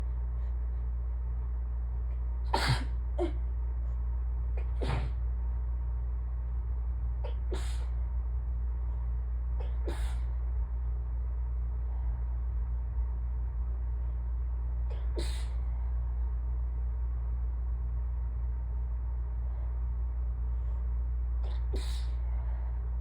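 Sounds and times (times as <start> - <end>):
low hum: 0.0 - 23.0
person sneezing: 2.5 - 3.4, 4.6 - 5.2, 7.2 - 7.9, 9.6 - 10.3, 14.9 - 15.6, 21.4 - 22.2.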